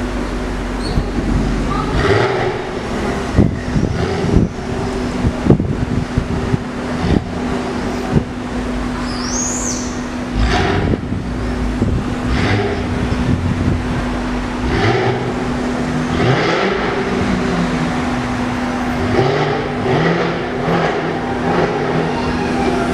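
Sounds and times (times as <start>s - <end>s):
car engine revving: 0.0s - 22.9s
street traffic: 0.0s - 22.9s
car exhaust crackles and pops: 10.3s - 15.5s.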